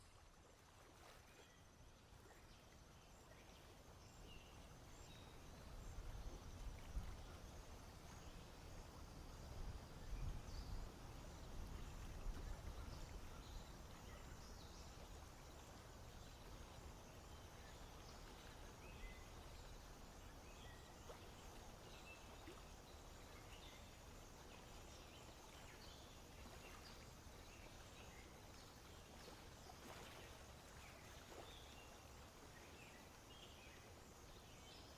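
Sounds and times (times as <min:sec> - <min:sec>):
faint marsh ambience: 0:00.0 - 0:34.9.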